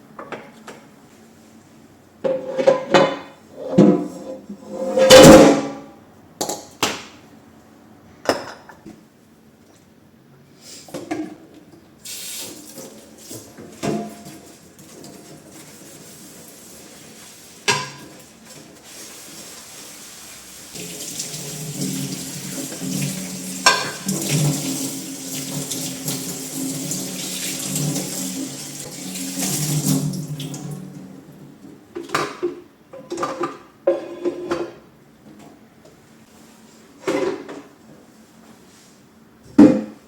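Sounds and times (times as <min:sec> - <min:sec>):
dishes clattering: 0:02.3 - 0:04.1, 0:17.7 - 0:18.1, 0:21.8 - 0:24.8
tap running into sink: 0:20.8 - 0:30.8.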